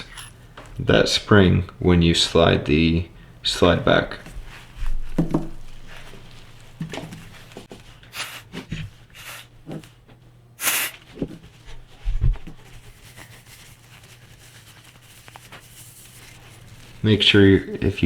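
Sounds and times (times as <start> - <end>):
dull thump: 4.8 - 5.8
short hissing noises: 8.1 - 9.6, 10.6 - 11.1.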